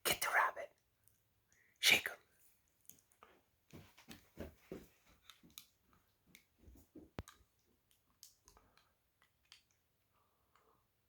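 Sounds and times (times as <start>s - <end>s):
faint clicks and soft taps: 2.6s - 10.8s.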